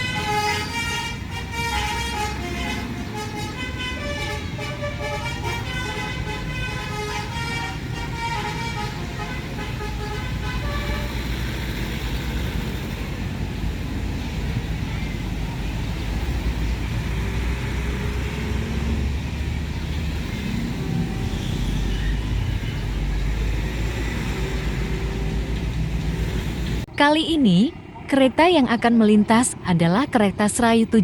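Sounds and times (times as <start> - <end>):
musical vehicle horn: 0.0 - 11.6
engine and traffic rumble: 0.0 - 31.0.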